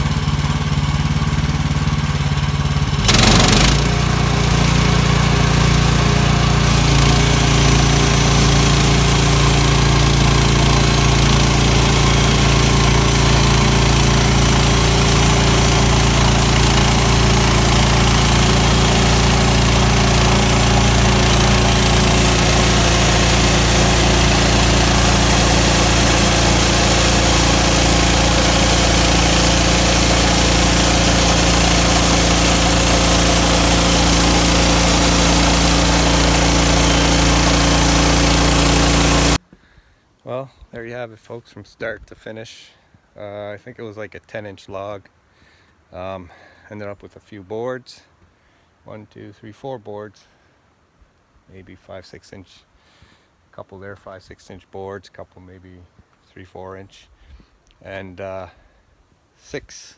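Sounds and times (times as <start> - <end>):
sawmill engine running: 0.0 - 39.4.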